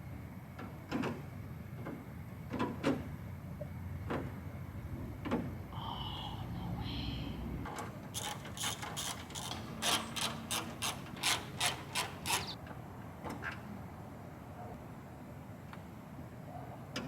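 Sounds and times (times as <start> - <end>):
ratchet wrench clicking: 8.2 - 12.6.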